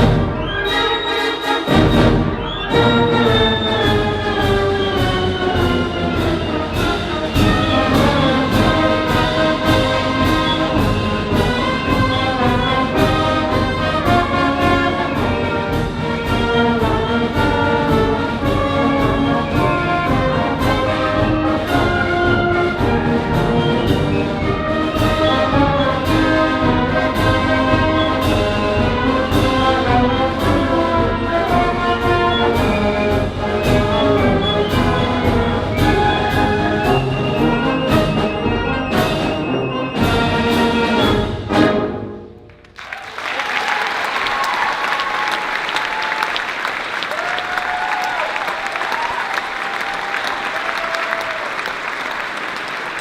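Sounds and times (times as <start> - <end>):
brass-led orchestral music: 0.0 - 42.8
steady percussive beat: 1.4 - 41.7.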